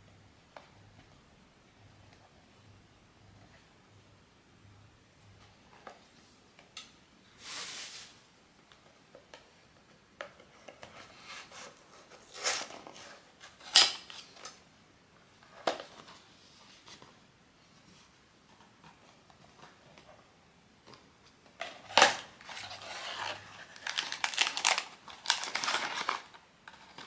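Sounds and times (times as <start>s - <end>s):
packaging rustle: 21.6s - 27.0s.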